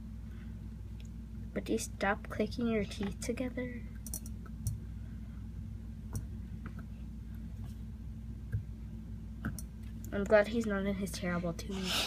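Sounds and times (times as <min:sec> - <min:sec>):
low hum: 0:00.0 - 0:12.0
faint clicks and taps: 0:03.9 - 0:04.8, 0:06.1 - 0:07.8, 0:09.4 - 0:10.8.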